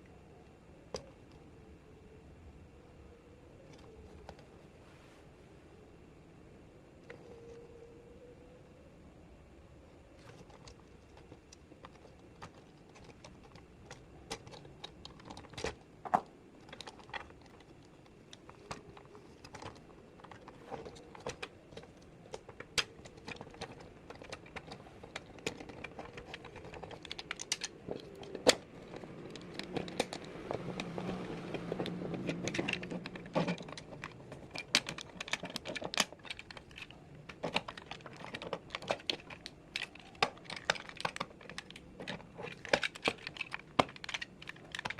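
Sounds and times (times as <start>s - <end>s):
plastic toy parts clicking: 10.2s - 44.9s.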